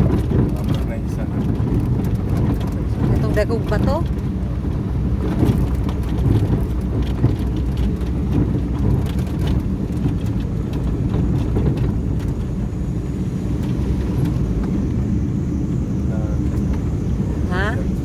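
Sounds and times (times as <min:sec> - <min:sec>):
engine knocking: 0:00.0 - 0:12.9
engine running: 0:00.0 - 0:18.0.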